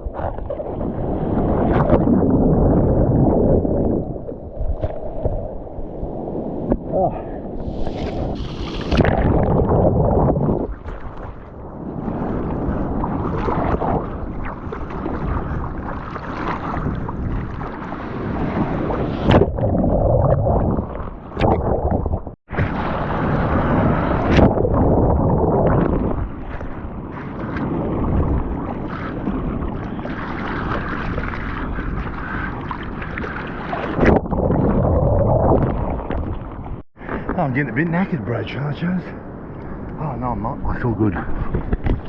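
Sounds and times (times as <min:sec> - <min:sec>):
wind buffeting microphone: 0:00.0 - 0:42.0
water rushing and splashing: 0:07.6 - 0:39.0.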